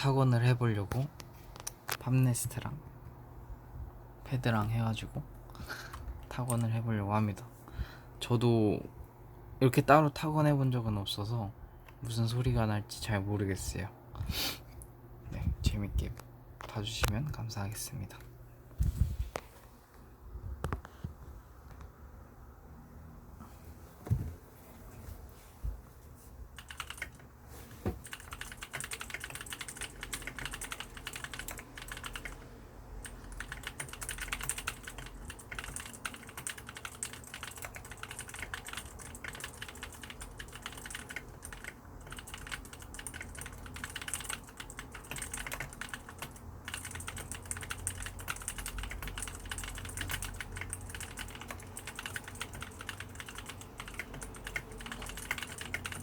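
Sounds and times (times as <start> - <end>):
mechanical keyboard clicky typing: 26.6 - 27.2, 28.0 - 56.0.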